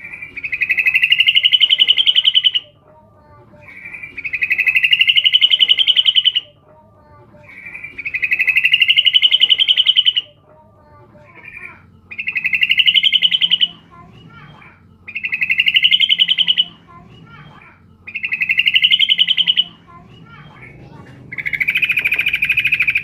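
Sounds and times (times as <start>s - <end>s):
bird chattering trills: 0.0s - 23.0s.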